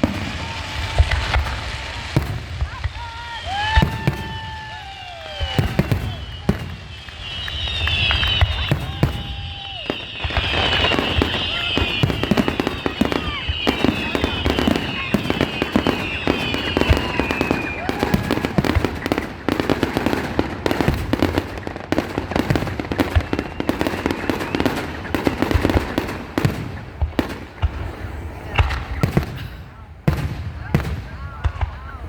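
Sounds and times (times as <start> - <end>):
fireworks bangs and crackling: 0.0 - 32.0
high whistling tones sweeping down: 3.4 - 18.5.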